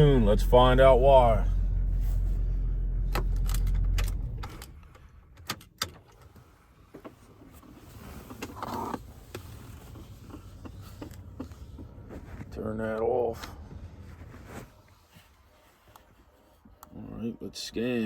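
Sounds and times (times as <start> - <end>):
vehicle engine rumbling: 0.0 - 5.4, 6.4 - 15.1.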